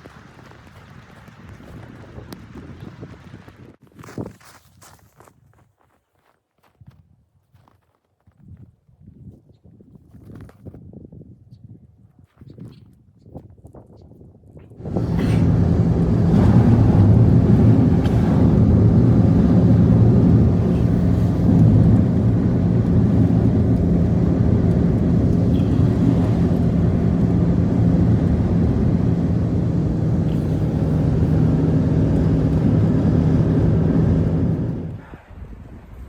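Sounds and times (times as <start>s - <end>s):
engine running steadily: 14.8s - 35.2s.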